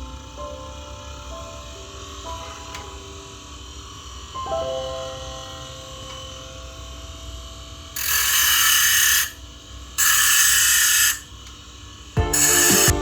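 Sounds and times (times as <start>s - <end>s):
angle grinder cutting: 8.0s - 9.4s, 10.0s - 11.4s, 12.3s - 13.0s
motor humming: 8.0s - 9.4s, 10.0s - 11.4s, 12.2s - 13.0s.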